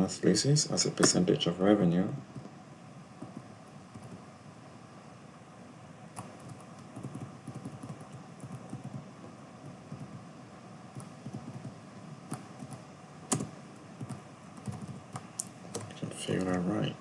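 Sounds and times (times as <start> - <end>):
computer keyboard typing: 3.2 - 4.2, 6.2 - 10.2, 10.9 - 16.6.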